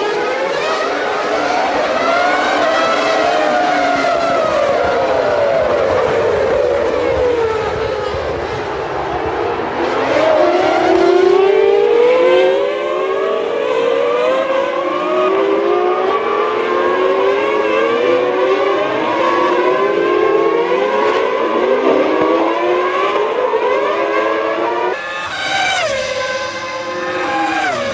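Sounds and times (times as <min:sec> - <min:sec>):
racing car engines at high revs: 0:00.0 - 0:27.9.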